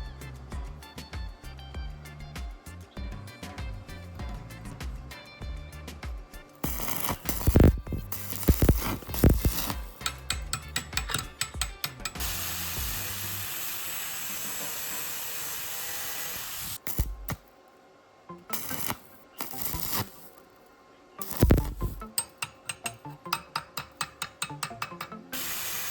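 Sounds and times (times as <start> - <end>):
steady hiss: 3.9 - 25.9
metal tools clinking and knocking: 9.1 - 12.3, 21.7 - 25.2.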